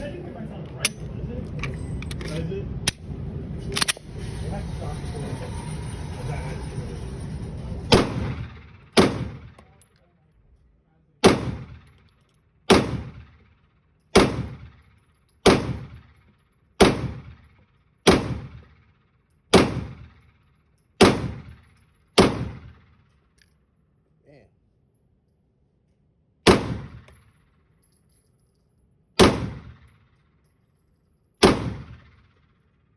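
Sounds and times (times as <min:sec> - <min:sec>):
pistol shots echoing: 0:09.0 - 0:09.6, 0:11.2 - 0:11.9, 0:12.7 - 0:13.3, 0:14.1 - 0:14.8, 0:15.5 - 0:16.0, 0:16.8 - 0:17.3, 0:18.0 - 0:18.6, 0:19.5 - 0:20.1, 0:21.0 - 0:21.6, 0:22.2 - 0:22.7, 0:26.4 - 0:27.1, 0:29.2 - 0:29.9, 0:31.4 - 0:32.2.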